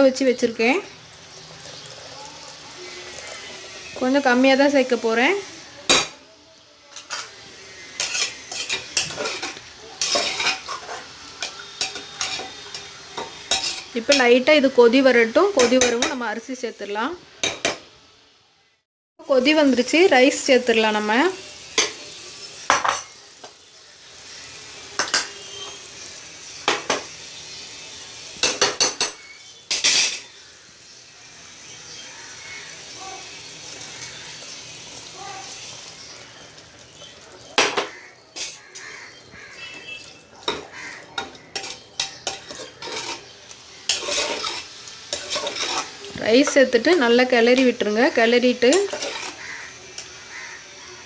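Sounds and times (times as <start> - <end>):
boiling water hiss: 0.0 - 18.0, 18.6 - 51.0
metal spoon scraping a pot: 7.0 - 14.2, 28.4 - 30.4, 38.3 - 38.6, 39.6 - 46.7, 48.6 - 49.7
metal utensil clinking on pan: 8.0 - 14.3, 25.0 - 25.4, 28.4 - 30.3, 40.0 - 43.3, 43.9 - 46.6, 48.6 - 49.4.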